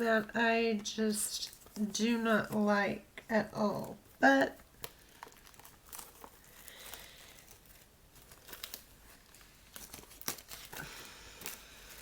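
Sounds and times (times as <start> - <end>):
packaging crinkling: 3.8 - 12.0
sharp packaging crackles: 3.8 - 12.0.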